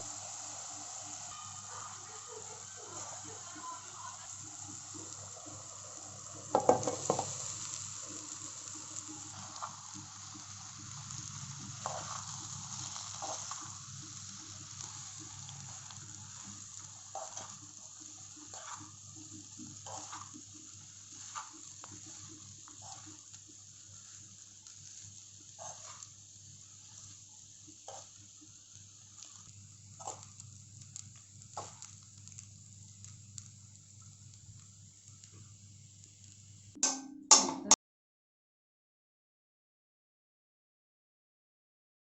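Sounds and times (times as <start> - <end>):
food sizzling in a pan: 0.0 - 37.4
spatula scraping a pan: 9.0 - 27.2, 27.8 - 28.3, 29.1 - 30.4.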